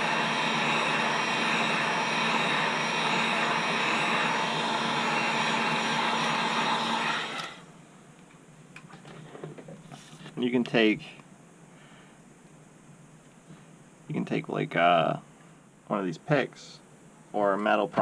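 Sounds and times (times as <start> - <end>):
heat gun blowing: 0.0 - 7.7.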